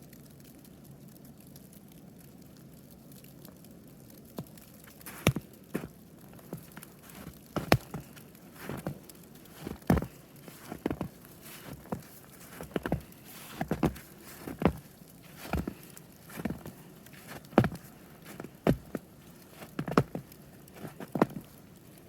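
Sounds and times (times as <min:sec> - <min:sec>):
footsteps crunching through snow: 0:05.0 - 0:22.0.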